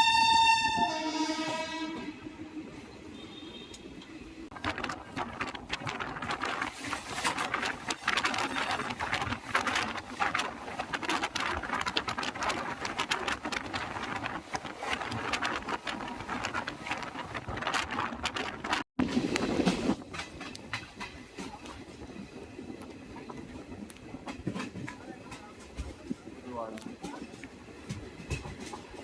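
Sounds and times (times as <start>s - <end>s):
train wheels clattering over joints: 4.5s - 29.0s.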